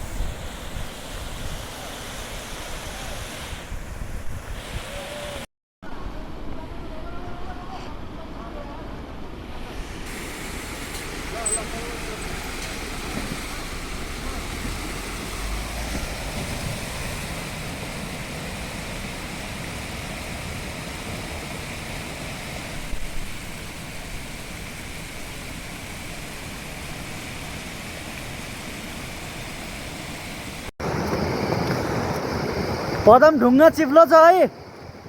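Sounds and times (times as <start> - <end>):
vehicle driving on dirt road: 10.2 - 18.6, 30.8 - 33.5.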